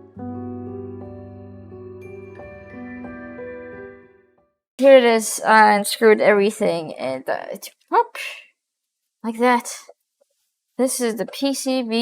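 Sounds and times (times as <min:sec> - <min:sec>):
soft slow background music: 0:00.0 - 0:04.5.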